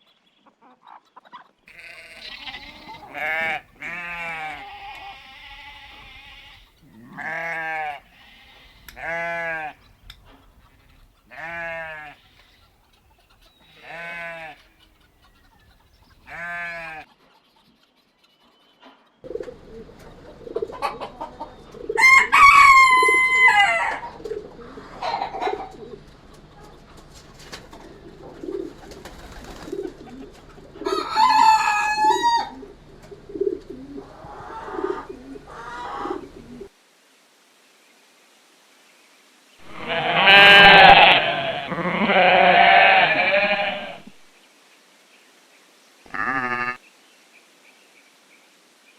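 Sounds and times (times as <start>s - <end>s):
hens clucking: 0.5s - 36.7s, 39.6s - 44.2s, 46.1s - 46.8s
goat bleating: 1.7s - 9.8s, 11.3s - 12.4s, 13.8s - 14.7s, 16.3s - 17.0s, 39.6s - 44.2s, 46.1s - 46.8s
rooster crowing: 22.0s - 24.2s, 30.8s - 32.6s, 39.6s - 44.1s.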